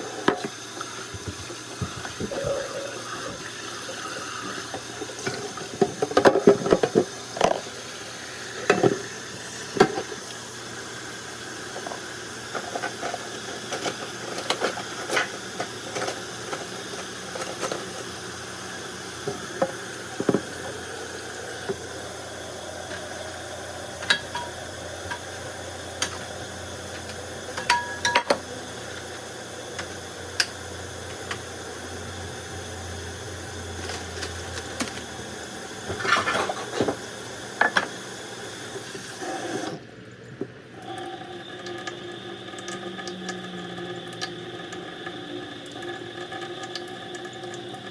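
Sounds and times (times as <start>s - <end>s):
dishes and utensils clinking: 24.0s - 25.4s, 27.5s - 28.4s, 35.9s - 37.0s.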